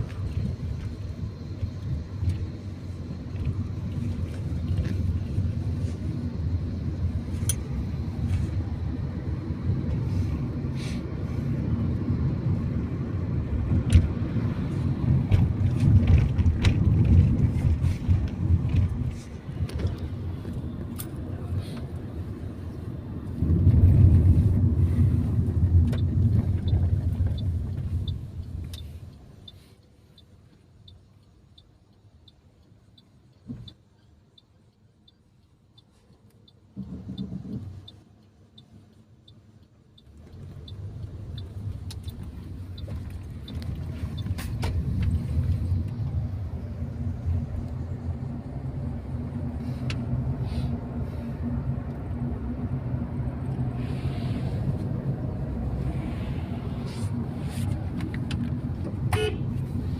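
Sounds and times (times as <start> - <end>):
road and engine rumble in car: 0.0 - 59.9
turn signal ticking: 11.6 - 53.7.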